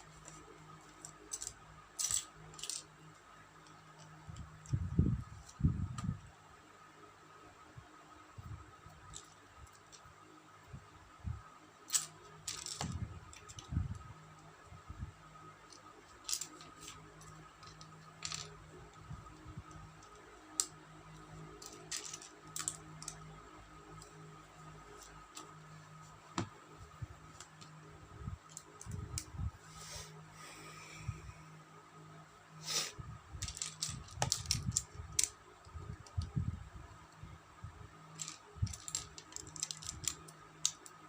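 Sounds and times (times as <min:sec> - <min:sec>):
faint steady hum: 0:00.0 - 0:41.0
plastic bricks clicking together: 0:01.0 - 0:02.9, 0:11.9 - 0:13.7, 0:15.7 - 0:18.6, 0:21.5 - 0:23.2, 0:33.4 - 0:36.3, 0:38.1 - 0:41.0.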